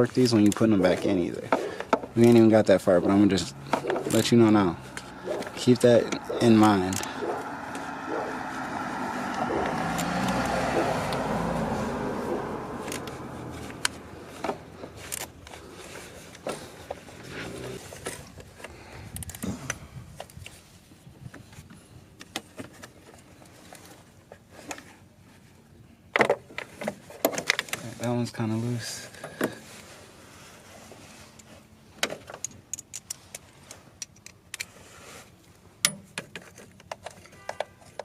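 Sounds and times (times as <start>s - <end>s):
car driving past: 3.4s - 14.7s.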